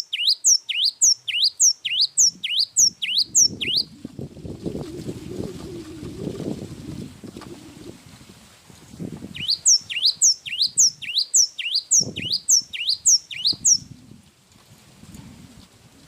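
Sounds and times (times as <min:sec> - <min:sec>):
bird whistling song: 0:00.0 - 0:03.9, 0:09.3 - 0:13.9.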